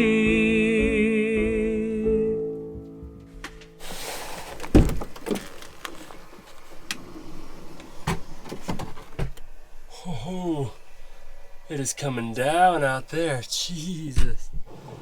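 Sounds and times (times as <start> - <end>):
thumps and clunks: 3.0 - 7.1, 7.8 - 9.5
van door opening: 3.6 - 9.6.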